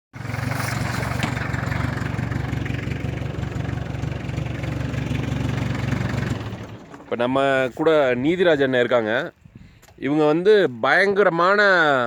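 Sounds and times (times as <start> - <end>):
car engine idling: 0.2 - 8.9.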